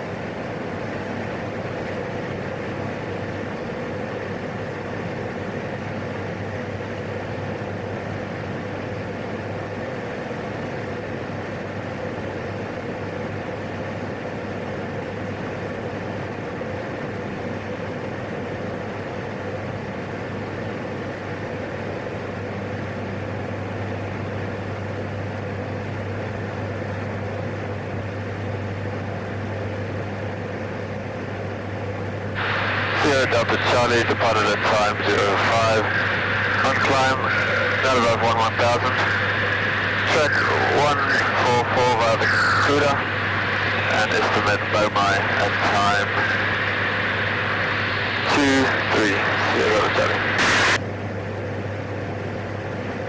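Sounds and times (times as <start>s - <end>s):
turboprop engine drone: 0.0s - 53.0s
low hum: 31.3s - 50.8s.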